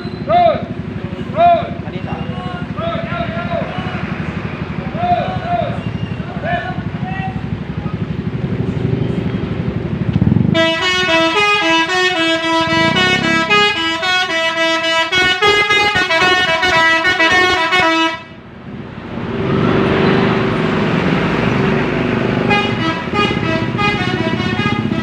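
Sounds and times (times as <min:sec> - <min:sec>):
bus engine: 0:00.0 - 0:25.0
road noise: 0:00.0 - 0:25.0
bus musical air horn tune: 0:10.5 - 0:18.4, 0:22.4 - 0:25.0.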